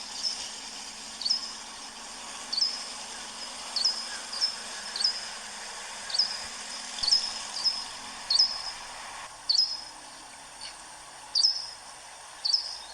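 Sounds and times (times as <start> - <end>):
small bird calling: 0.0 - 8.9, 9.5 - 9.9, 10.6 - 11.8, 12.4 - 12.9
steady hiss: 0.0 - 12.9.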